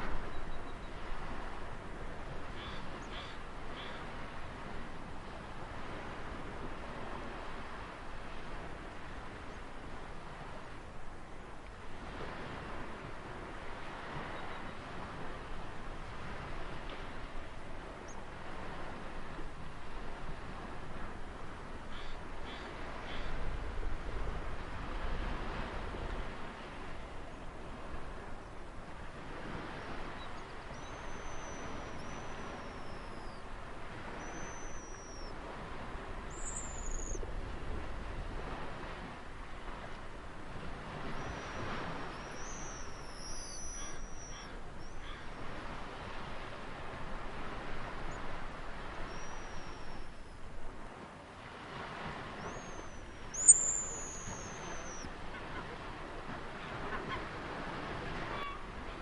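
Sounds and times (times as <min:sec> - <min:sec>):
ocean surf washing: 0:00.0 - 0:59.0
bird whistles: 0:30.7 - 0:33.4, 0:34.2 - 0:35.3, 0:36.3 - 0:37.2, 0:41.2 - 0:44.9, 0:49.1 - 0:50.0, 0:52.4 - 0:55.1.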